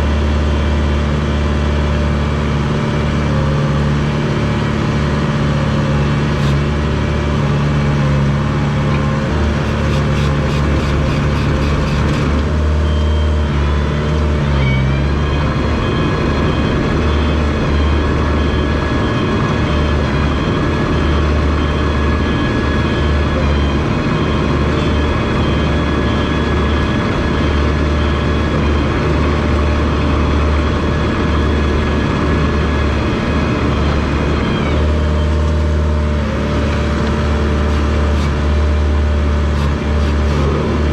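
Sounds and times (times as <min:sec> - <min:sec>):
bulldozer diesel engine rumbling: 0:00.0 - 0:40.9.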